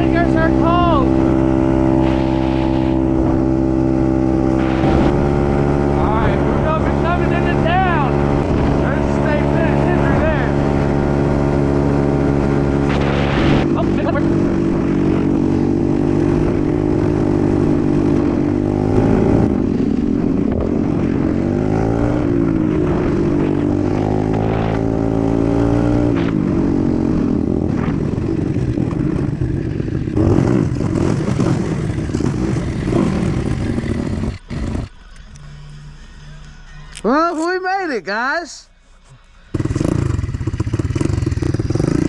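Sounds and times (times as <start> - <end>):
dirt bike engine revving: 0.0 - 35.0, 39.5 - 42.0.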